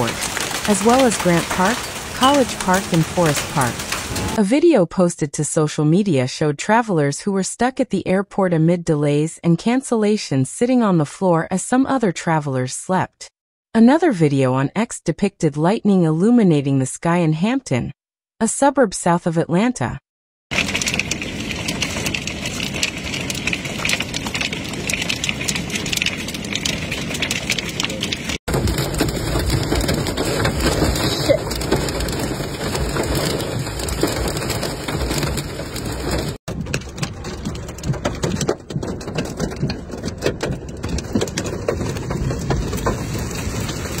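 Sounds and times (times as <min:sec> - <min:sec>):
heavy rain on hard surfaces: 0:00.0 - 0:04.4, 0:20.5 - 0:44.0.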